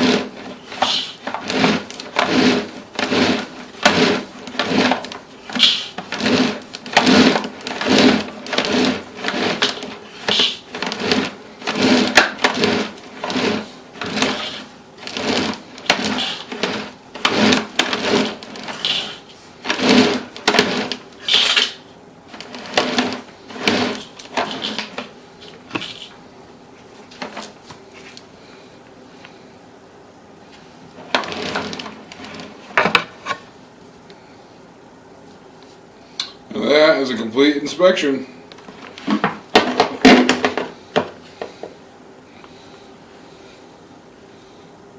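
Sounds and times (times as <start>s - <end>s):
cable rubbing strokes: 0.0s - 26.2s.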